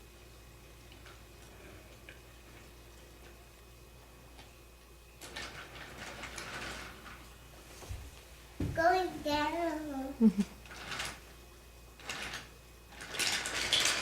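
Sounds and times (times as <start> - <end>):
toy train cars rattling on track: 5.2 - 7.2, 10.7 - 11.2, 12.0 - 14.0.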